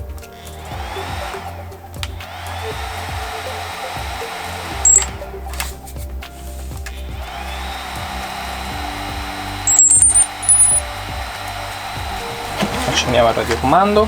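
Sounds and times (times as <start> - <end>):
drone clicks: 0.0 - 12.6
drone whirring hum: 0.0 - 14.0
high-pitched beeps rising in pitch: 4.3 - 5.4, 9.7 - 10.9.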